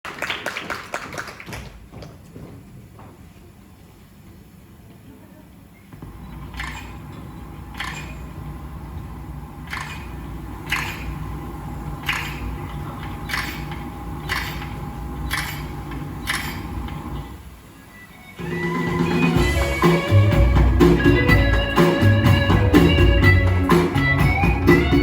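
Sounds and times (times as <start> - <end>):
low hum of room noise: 0.1 - 19.7.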